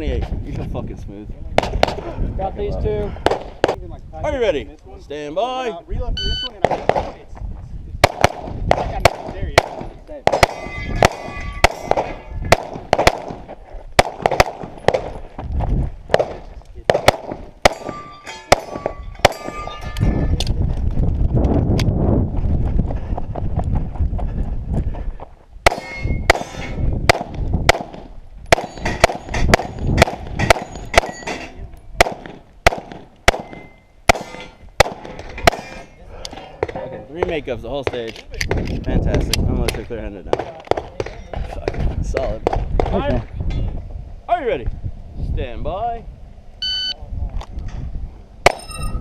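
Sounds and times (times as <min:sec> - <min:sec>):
rapid pistol fire: 0:08.0 - 0:13.4, 0:14.0 - 0:15.1, 0:16.1 - 0:17.9, 0:27.1 - 0:31.2, 0:32.0 - 0:35.6
steel targets ringing: 0:10.4 - 0:12.5, 0:17.7 - 0:20.4, 0:25.7 - 0:26.8, 0:28.5 - 0:29.5, 0:30.4 - 0:31.7, 0:33.4 - 0:34.7, 0:48.5 - 0:49.0.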